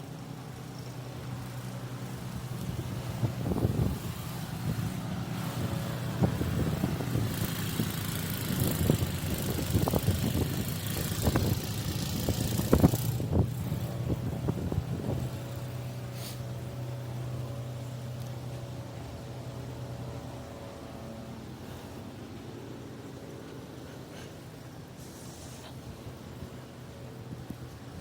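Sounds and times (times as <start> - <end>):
hiss: 0.0 - 14.0, 15.1 - 16.6, 23.8 - 26.2
engine idling: 0.0 - 28.0.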